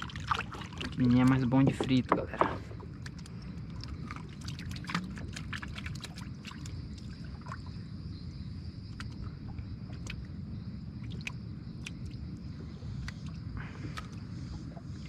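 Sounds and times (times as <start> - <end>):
clicks and knocks in canoe: 0.0 - 7.1
water trickling and dripping: 0.0 - 15.0
steady low rumble: 2.6 - 15.0.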